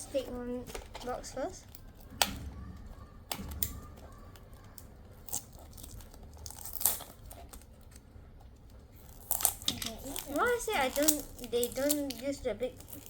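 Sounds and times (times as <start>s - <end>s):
packaging clicks and crinkles: 0.0s - 13.0s
packaging tearing rustle: 0.0s - 13.0s.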